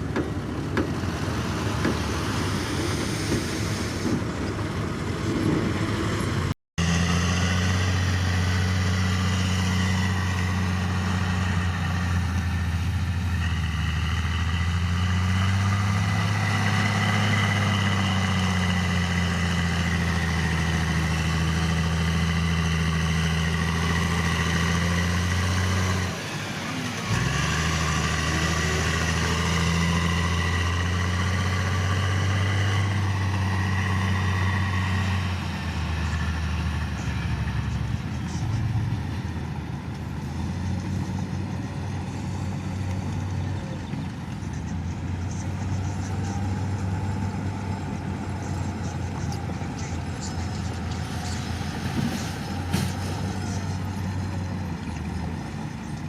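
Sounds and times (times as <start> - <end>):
diesel engine humming: 0.0 - 56.0.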